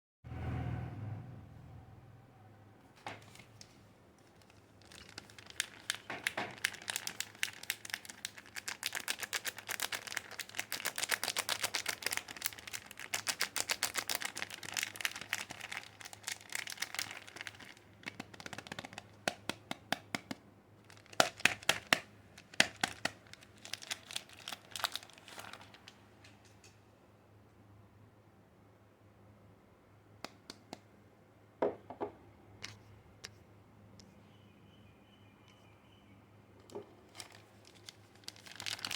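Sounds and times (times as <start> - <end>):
wrapper crinkling: 3.2 - 19.4, 20.8 - 26.1, 36.7 - 38.9.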